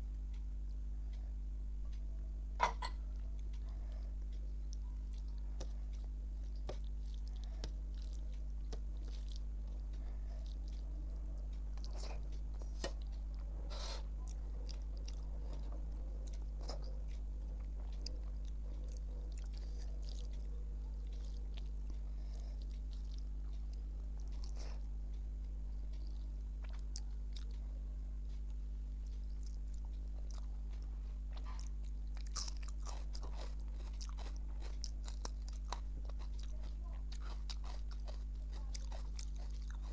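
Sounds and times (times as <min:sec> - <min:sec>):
low electrical hum: 0:00.0 - 0:39.9
person chewing food: 0:00.3 - 0:39.9
food crunching: 0:01.9 - 0:39.9.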